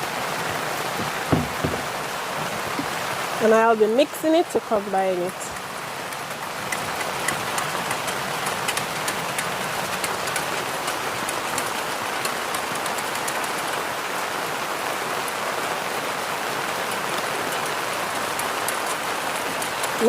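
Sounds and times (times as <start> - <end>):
raindrops ticking close by: 0.0 - 20.0
steady rain hiss: 0.0 - 20.0.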